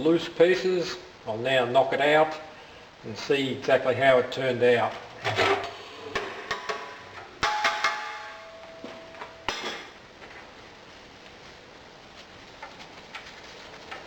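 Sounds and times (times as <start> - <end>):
metal knocks and clangs: 5.2 - 10.0.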